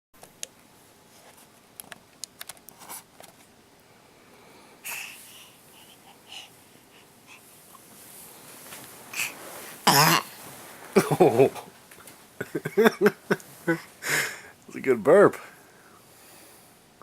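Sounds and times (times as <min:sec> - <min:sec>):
baby's breathy noises: 0:04.8 - 0:07.8, 0:09.1 - 0:09.4.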